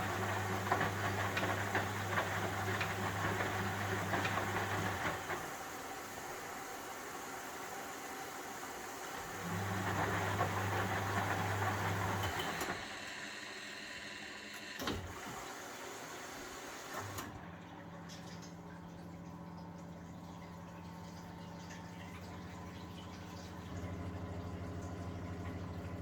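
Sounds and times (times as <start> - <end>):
washing machine motor humming: 0.0 - 26.0.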